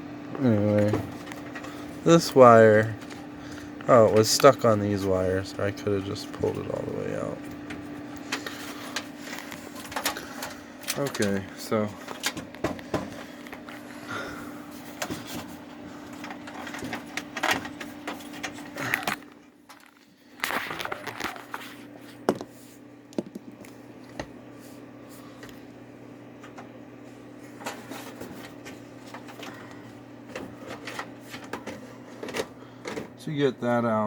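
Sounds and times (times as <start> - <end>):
steady low hum: 0.0 - 34.0
parts clicking inside computer case: 7.5 - 13.7, 16.1 - 21.6, 27.5 - 33.2.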